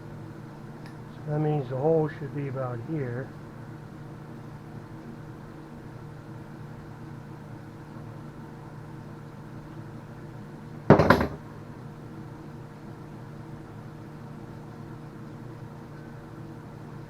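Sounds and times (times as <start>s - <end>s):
steady low hum: 0.0s - 17.0s
hard object clattering: 10.9s - 11.4s.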